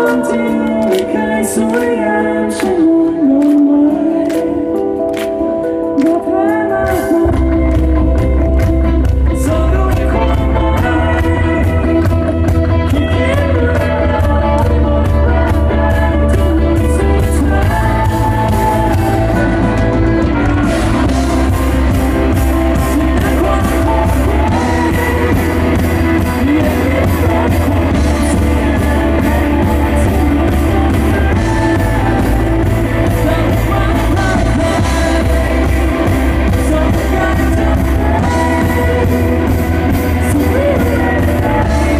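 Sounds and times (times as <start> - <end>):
live rock band playing: 0.0 - 41.9
person singing: 0.0 - 41.9.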